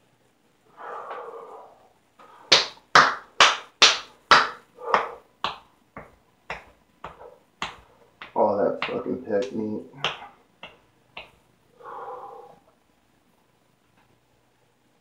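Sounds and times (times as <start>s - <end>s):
breathy rush: 0.7s - 2.8s, 4.5s - 5.3s, 11.8s - 12.7s
sharp hand slaps: 2.5s - 11.4s.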